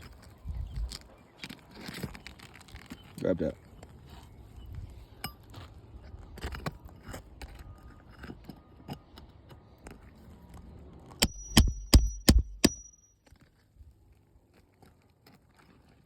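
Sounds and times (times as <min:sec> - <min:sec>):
hammer striking steel pry bar: 0:11.2 - 0:13.1.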